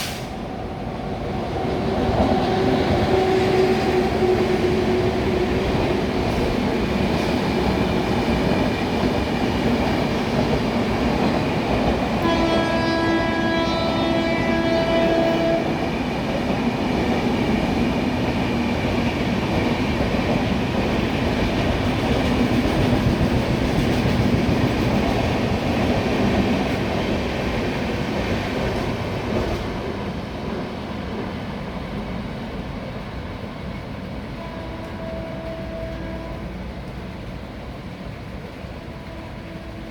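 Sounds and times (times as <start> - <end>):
locomotive horn: 12.2 - 15.9, 34.4 - 36.6, 38.8 - 39.9.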